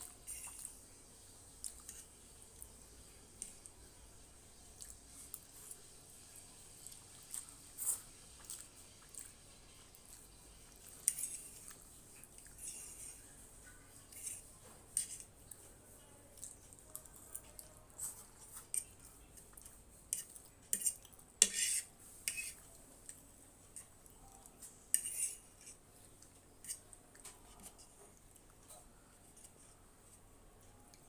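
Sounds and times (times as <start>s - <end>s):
cutlery clinking and scraping on dish: 20.1s - 22.6s, 24.9s - 25.8s.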